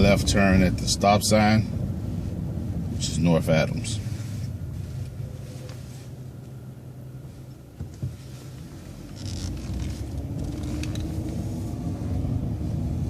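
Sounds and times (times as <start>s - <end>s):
bus engine: 0.0s - 13.0s.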